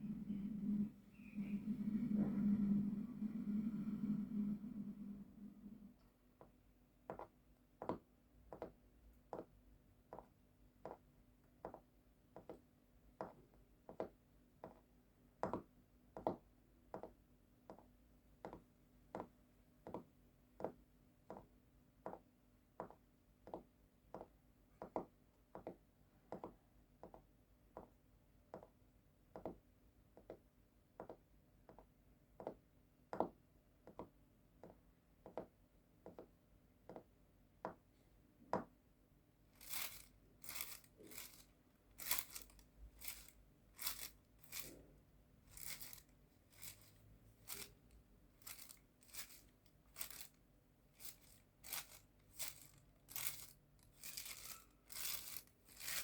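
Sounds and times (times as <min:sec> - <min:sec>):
faint low hum: 0:00.0 - 0:07.0.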